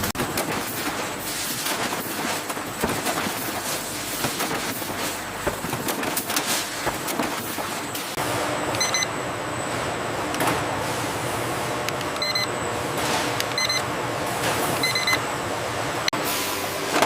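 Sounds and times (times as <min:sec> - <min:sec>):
factory machinery clattering: 0:00.0 - 0:08.8
steady machine hum: 0:00.0 - 0:17.0
high electronic beep: 0:08.8 - 0:09.1, 0:12.2 - 0:12.5, 0:14.8 - 0:15.2.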